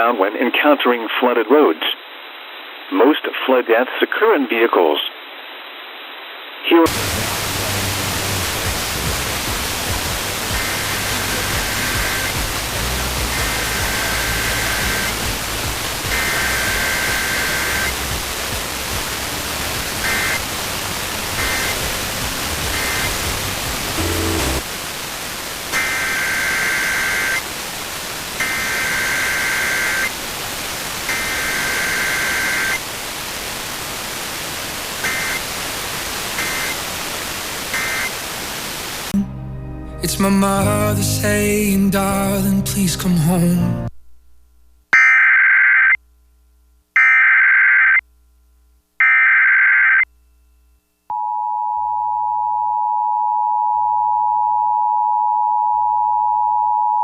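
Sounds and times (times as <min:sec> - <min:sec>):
radio static: 0:00.0 - 0:24.7, 0:25.7 - 0:27.5, 0:28.3 - 0:30.2, 0:31.0 - 0:39.1
buzzy data bursts: 0:06.9 - 0:24.7, 0:31.1 - 0:32.8, 0:35.0 - 0:35.5
low hum: 0:06.9 - 0:24.7.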